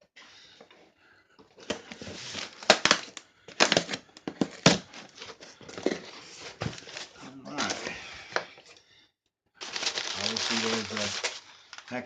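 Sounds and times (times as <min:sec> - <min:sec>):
box packaging being torn open: 0:01.7 - 0:05.3, 0:09.6 - 0:11.9.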